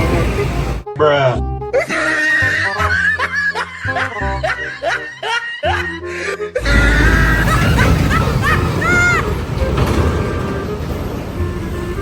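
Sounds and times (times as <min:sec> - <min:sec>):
music: 0:00.0 - 0:12.0
snickering laugh with rising yelps: 0:01.8 - 0:06.0, 0:06.6 - 0:09.4.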